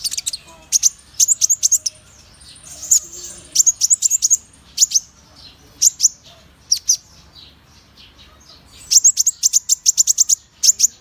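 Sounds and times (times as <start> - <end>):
bird chirping: 0.0 - 11.0.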